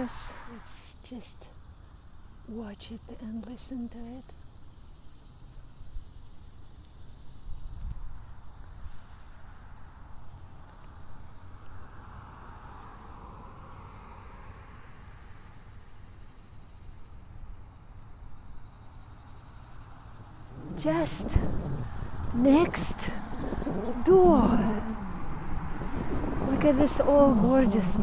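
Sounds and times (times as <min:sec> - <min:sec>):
insects chirping in grass: 0:00.0 - 0:28.0
low rumble: 0:20.3 - 0:28.0.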